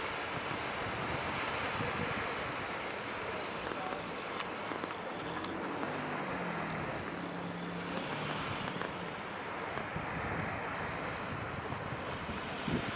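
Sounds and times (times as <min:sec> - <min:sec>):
surf washing on shore: 0:00.0 - 0:12.9
wind on microphone: 0:00.2 - 0:02.7, 0:06.8 - 0:12.9
low engine hum: 0:00.5 - 0:12.9.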